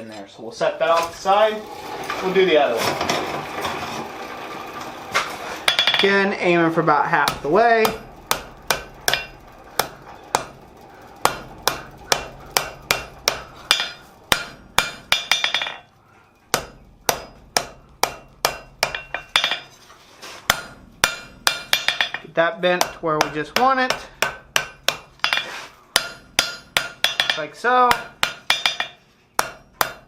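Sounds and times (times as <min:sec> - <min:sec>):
hammer striking steel on anvil: 0:05.6 - 0:06.4, 0:07.2 - 0:10.6, 0:11.2 - 0:15.9, 0:16.5 - 0:19.7, 0:20.5 - 0:30.0.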